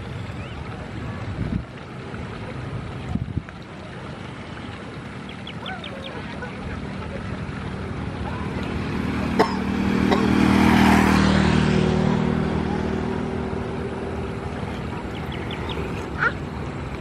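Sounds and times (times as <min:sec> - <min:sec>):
jet engines passing by: 0:06.2 - 0:17.0.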